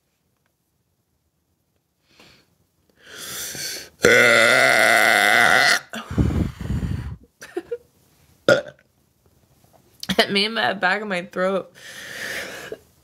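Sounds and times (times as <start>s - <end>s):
person burping loudly: 4.0s - 6.2s, 8.5s - 8.8s
breathy sound: 5.9s - 7.2s.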